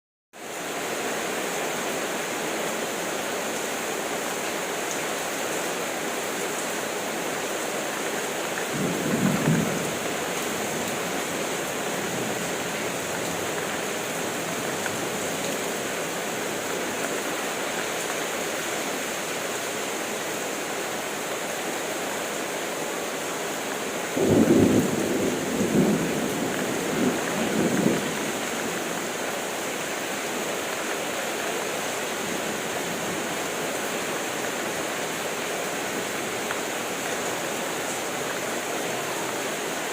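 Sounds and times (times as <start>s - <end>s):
heavy rain: 0.3s - 39.9s
low rumbles of thunder: 8.7s - 11.0s, 24.2s - 28.5s.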